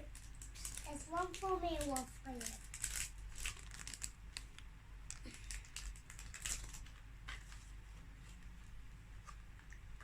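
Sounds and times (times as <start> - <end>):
plastic items clicking and rustling: 0.0 - 7.6.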